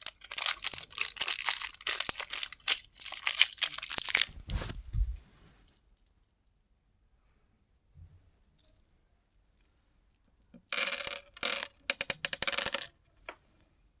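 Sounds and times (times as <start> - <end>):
plastic packaging crinkling: 0.2 - 5.2.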